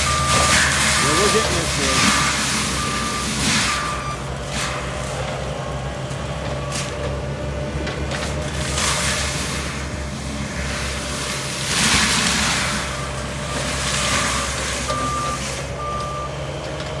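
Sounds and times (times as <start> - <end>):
backup alarm beeping: 0.0 - 4.2, 13.5 - 16.4
rushing grinding of brush: 0.0 - 5.6, 8.3 - 15.8
diesel engine running: 0.0 - 17.0.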